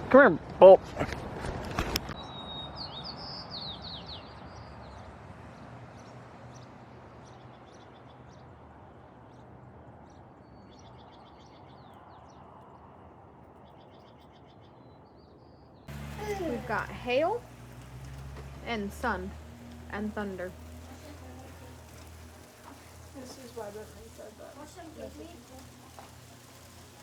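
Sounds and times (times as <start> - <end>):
songbird singing: 2.1 - 27.0
steady rushing noise: 15.9 - 27.0.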